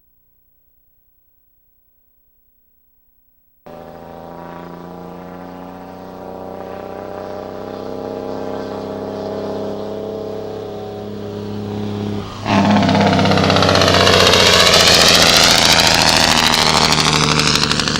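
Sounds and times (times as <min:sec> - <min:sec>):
diesel engine running hard: 0:03.7 - 0:17.9.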